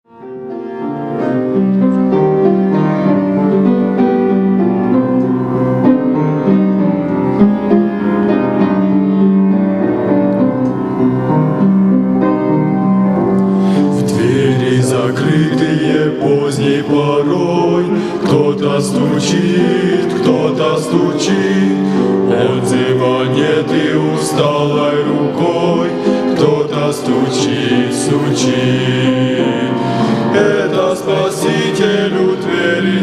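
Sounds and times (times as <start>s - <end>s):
slow piano hymn introduction: 0.1s - 33.0s
person singing: 13.6s - 33.0s.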